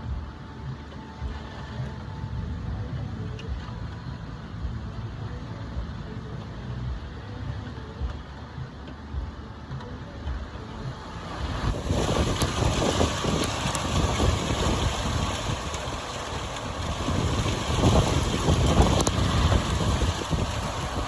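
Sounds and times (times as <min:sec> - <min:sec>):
heavy rain: 0:00.0 - 0:21.0
gusting wind: 0:09.1 - 0:21.0.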